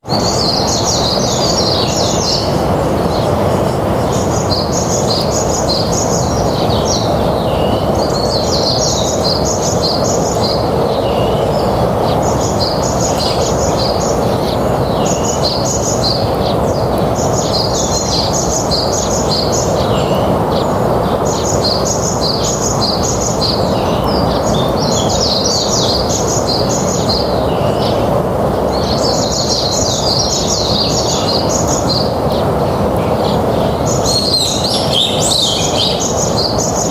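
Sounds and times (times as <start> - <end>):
steady background noise: 0.0 - 36.9
songbird chirping: 28.8 - 36.9.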